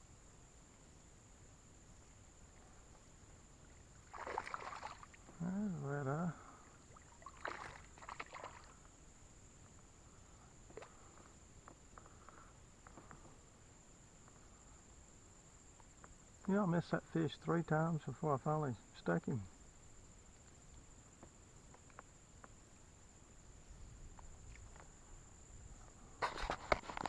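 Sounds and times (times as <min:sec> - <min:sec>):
high insect trill: 0:00.0 - 0:27.0
river water splashing: 0:02.4 - 0:08.9
faint clicks: 0:20.3 - 0:22.8.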